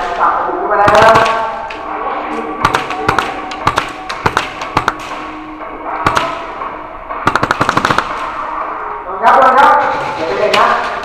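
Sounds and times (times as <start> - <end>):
airsoft guns firing: 0.8 - 1.6, 2.6 - 5.3, 6.0 - 6.6, 7.2 - 8.4.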